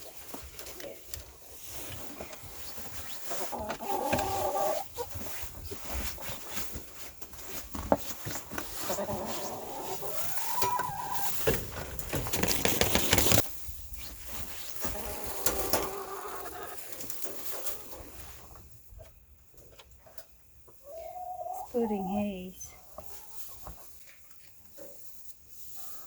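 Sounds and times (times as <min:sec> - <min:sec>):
chickens clucking: 0:00.0 - 0:13.5, 0:14.1 - 0:25.0
rustling crunching noise: 0:11.3 - 0:15.2.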